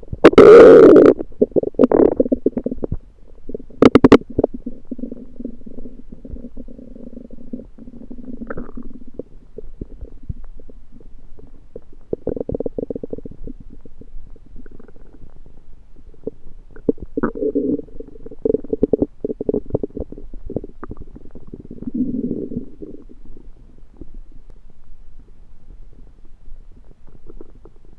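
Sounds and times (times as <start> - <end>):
stomach gurgling and rumbling: 0.0 - 27.9.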